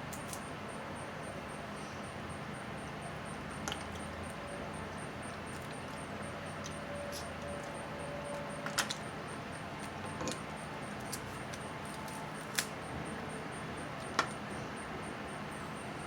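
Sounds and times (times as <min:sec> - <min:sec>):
crab legs cracking: 0:09.8 - 0:12.8.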